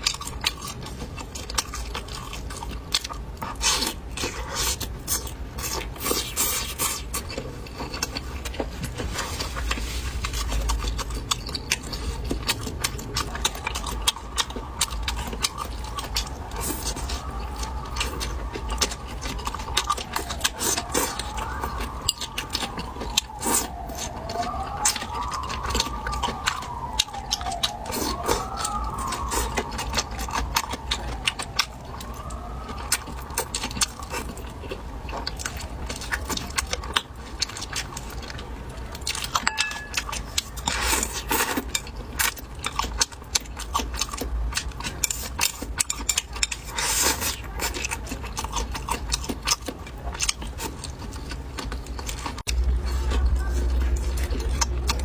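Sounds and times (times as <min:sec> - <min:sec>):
chewing and biting: 0:00.0 - 0:55.0
low hum: 0:38.6 - 0:40.6
wavering tone: 0:39.3 - 0:40.6.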